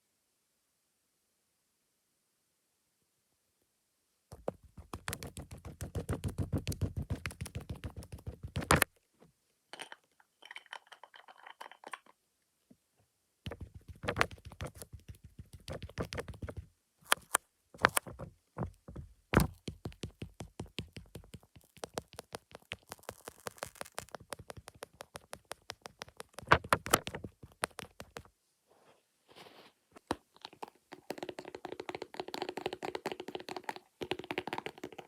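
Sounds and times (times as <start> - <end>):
makeup tools tapping on lens: 17.8 - 23.2, 23.9 - 28.3, 30.1 - 35.0
scratchy noise: 21.8 - 29.9.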